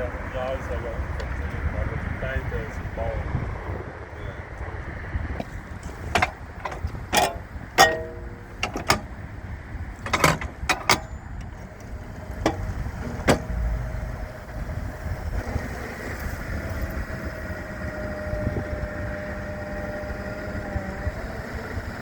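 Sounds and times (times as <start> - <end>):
low steady rumble: 0.0 - 21.6
metallic clanks and knocks: 5.4 - 13.7.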